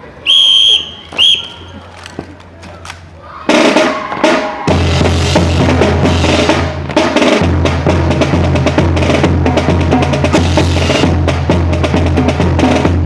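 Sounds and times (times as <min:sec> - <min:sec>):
marching snare and bass drums: 0:03.5 - 0:13.0.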